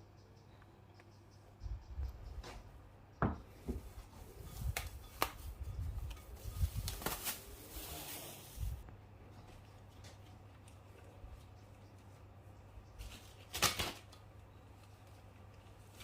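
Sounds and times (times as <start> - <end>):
rustling hiss: 6.4 - 8.8.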